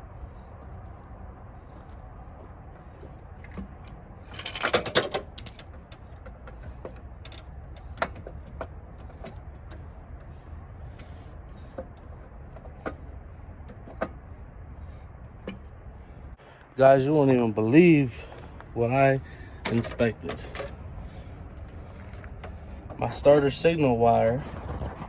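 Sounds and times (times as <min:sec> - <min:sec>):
metal tools clinking and rattling: 0:03.0 - 0:09.7, 0:19.2 - 0:23.2.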